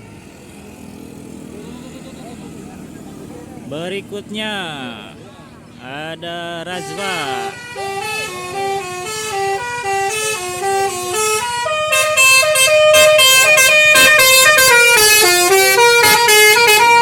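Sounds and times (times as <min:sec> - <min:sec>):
multi-tone air horns playing tune: 0:06.5 - 0:17.0.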